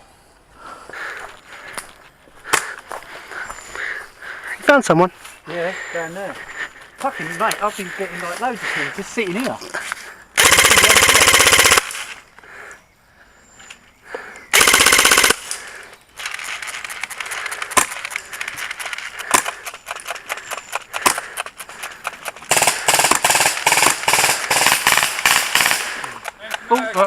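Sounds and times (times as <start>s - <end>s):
airsoft guns firing: 10.4s - 12.1s, 14.5s - 15.7s, 22.0s - 26.4s.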